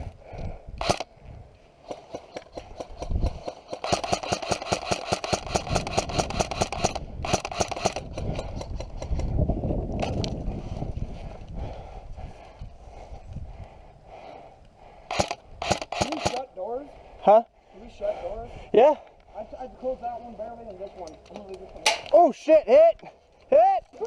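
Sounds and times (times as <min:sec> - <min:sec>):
airsoft gun firing full auto: 0:00.8 - 0:01.1, 0:01.9 - 0:08.0, 0:15.1 - 0:16.4.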